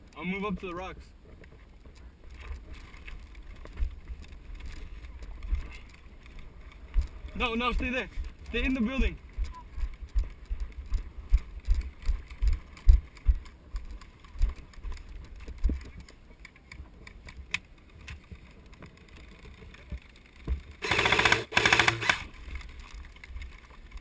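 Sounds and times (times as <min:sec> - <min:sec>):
airsoft gun full-auto bursts: 0:20.8 - 0:22.3.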